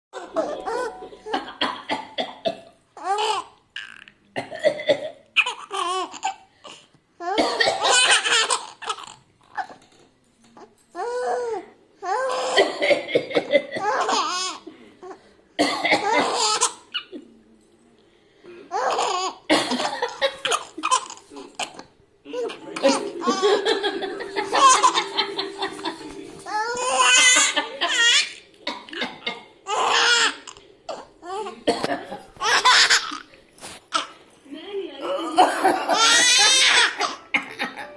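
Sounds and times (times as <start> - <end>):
small child laughing: 22.4 - 25.9.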